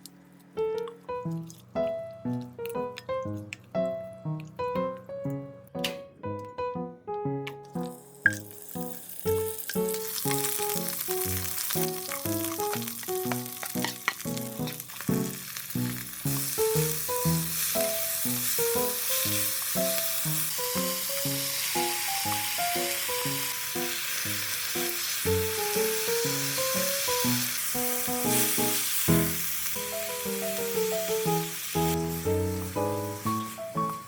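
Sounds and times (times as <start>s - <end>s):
food sizzling in hot oil: 7.8s - 34.0s.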